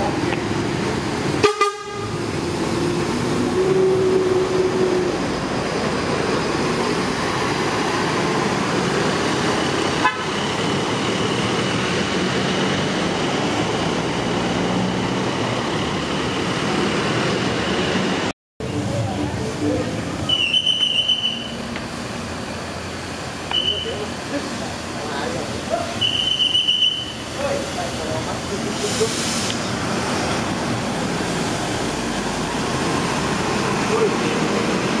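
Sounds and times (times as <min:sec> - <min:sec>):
bus engines running: 0:00.0 - 0:35.0
traffic: 0:00.0 - 0:35.0
bus horns: 0:01.4 - 0:02.2, 0:03.4 - 0:05.2, 0:10.0 - 0:10.5, 0:26.0 - 0:27.2.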